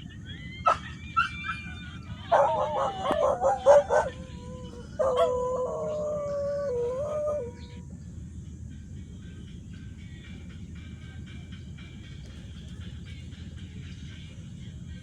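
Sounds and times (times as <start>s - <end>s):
dog yelping: 0.4s - 7.7s
dog howling: 0.4s - 7.9s.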